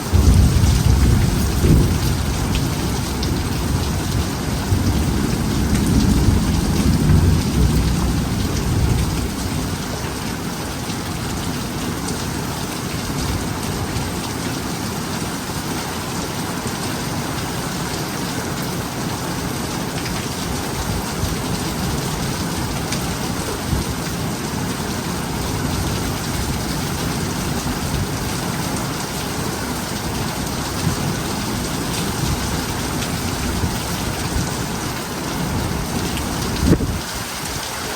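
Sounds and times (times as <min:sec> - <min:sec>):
heavy rain falling: 0:00.0 - 0:37.9
thunder rumbling: 0:00.1 - 0:10.0.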